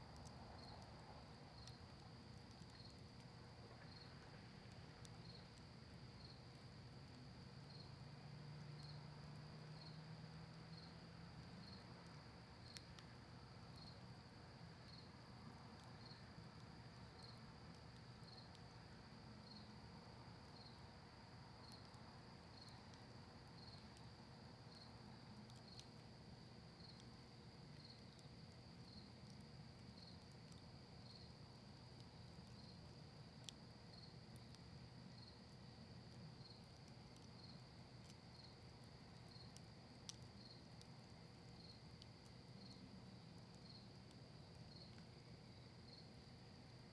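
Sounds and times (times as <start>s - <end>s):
campfire crackles: 0.0s - 46.9s
cricket trill: 27.7s - 46.5s.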